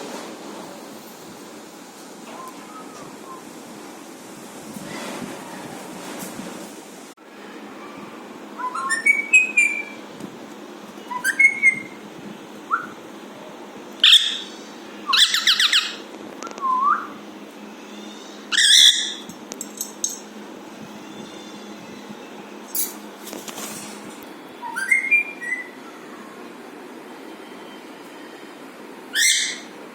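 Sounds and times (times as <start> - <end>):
parakeet whistling and calling: 8.6 - 10.0, 11.0 - 12.0, 12.7 - 13.0, 14.0 - 17.2, 17.9 - 19.3, 24.6 - 26.0, 29.1 - 29.8.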